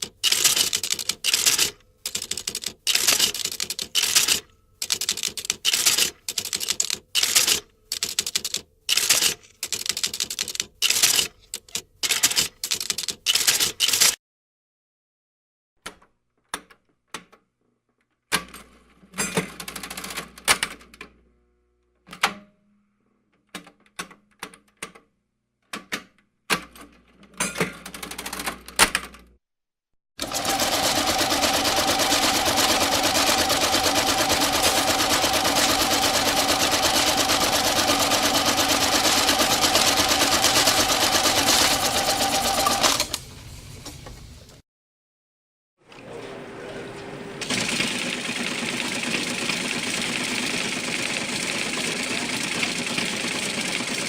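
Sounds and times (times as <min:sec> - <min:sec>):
adding machine mechanism rattle: 0:00.0 - 0:14.2.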